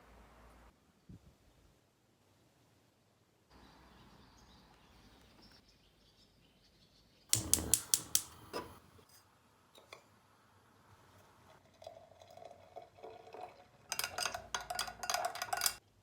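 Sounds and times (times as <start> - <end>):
faint steady hiss: 0.0 - 5.4, 7.3 - 11.7
hard objects clicking and knocking: 7.3 - 8.8, 14.0 - 15.8.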